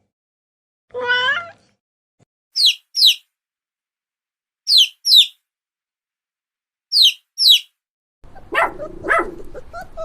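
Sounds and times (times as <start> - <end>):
bird chirping: 2.6 - 3.3, 4.7 - 5.4, 6.9 - 7.8.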